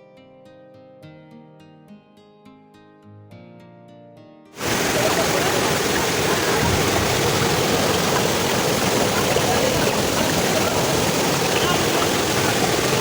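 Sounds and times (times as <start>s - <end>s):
waterfall roaring: 4.6s - 13.0s.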